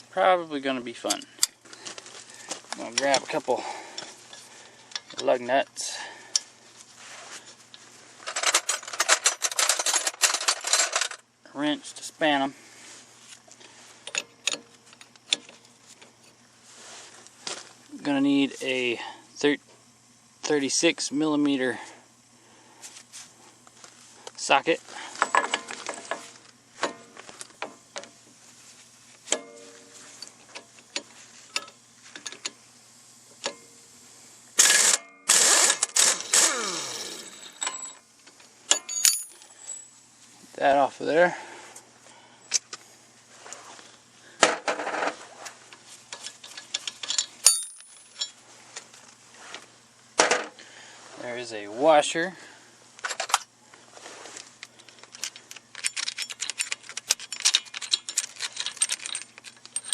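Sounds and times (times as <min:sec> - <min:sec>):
power wrench running: 0:34.6 - 0:37.9
tools clicking when handled: 0:54.7 - 0:59.9.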